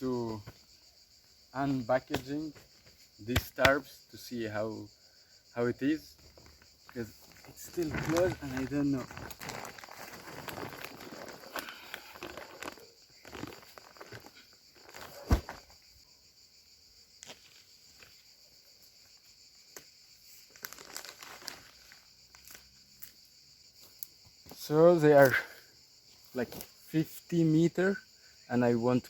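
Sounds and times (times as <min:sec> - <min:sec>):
insects chirring: 0:00.0 - 0:29.0
plastic packaging crinkling: 0:07.4 - 0:15.0, 0:20.5 - 0:21.9.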